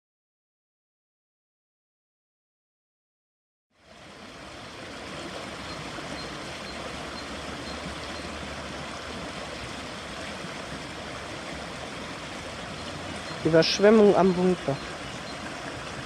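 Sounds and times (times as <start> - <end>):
floodwater rushing in creek: 3.7 - 16.0.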